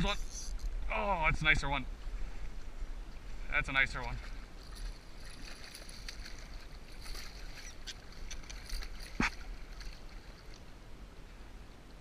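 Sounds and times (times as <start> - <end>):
water splashing: 3.3 - 10.8.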